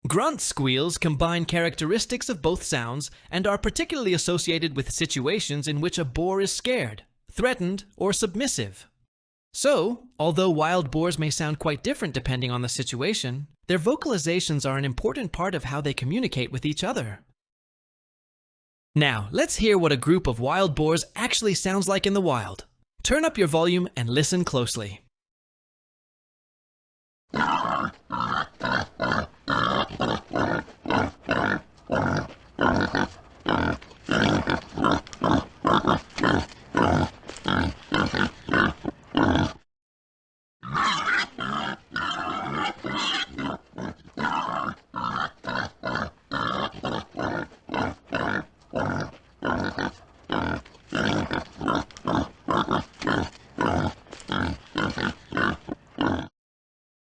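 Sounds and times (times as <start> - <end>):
wild boars grunting: 27.3 - 39.6, 40.6 - 56.3.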